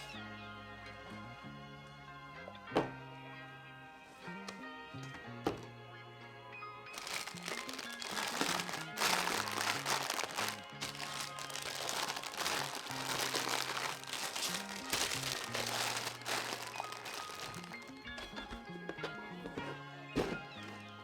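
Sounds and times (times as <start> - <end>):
plastic bags crinkling: 7.0 - 18.1.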